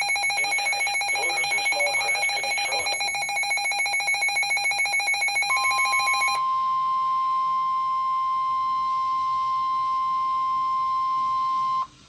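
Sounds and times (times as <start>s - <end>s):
steady alarm tone: 0.0s - 6.5s.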